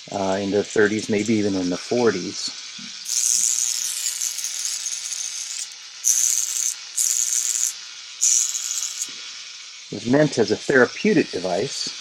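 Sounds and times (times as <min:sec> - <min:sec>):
electrode crackling hiss: 0:00.1 - 0:09.3.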